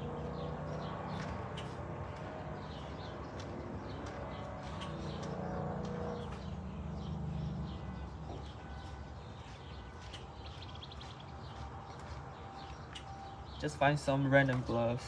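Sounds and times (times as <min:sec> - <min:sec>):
bird trill: 0:03.9 - 0:14.3.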